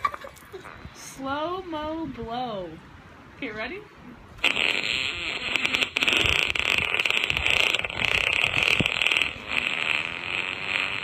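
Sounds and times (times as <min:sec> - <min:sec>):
fart sound effect: 0:04.4 - 0:11.0.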